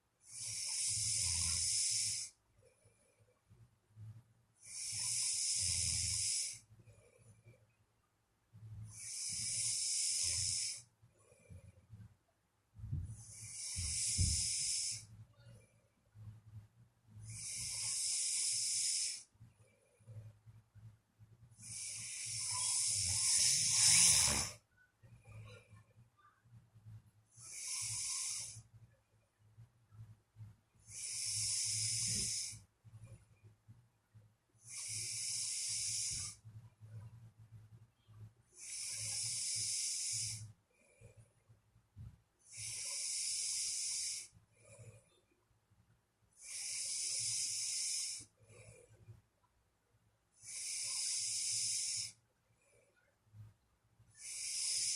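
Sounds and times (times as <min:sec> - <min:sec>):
person snoring: 0:00.3 - 0:02.4, 0:04.6 - 0:06.6, 0:08.9 - 0:10.8, 0:13.1 - 0:15.1, 0:17.3 - 0:19.3, 0:21.6 - 0:24.6, 0:27.4 - 0:28.6, 0:30.8 - 0:32.6, 0:34.7 - 0:36.4, 0:38.6 - 0:40.4, 0:42.5 - 0:44.3, 0:46.4 - 0:48.3, 0:50.4 - 0:52.2, 0:54.2 - 0:54.9.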